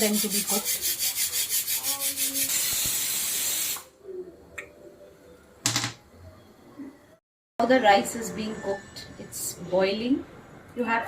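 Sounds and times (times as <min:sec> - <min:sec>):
loud hiss from cooking pots: 0:00.0 - 0:03.9.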